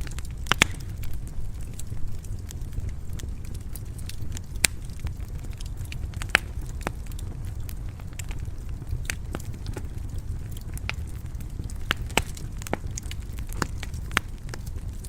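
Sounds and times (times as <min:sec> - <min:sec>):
low rumble of flames: 0:00.0 - 0:15.0
wood fire crackling and popping: 0:00.0 - 0:15.0.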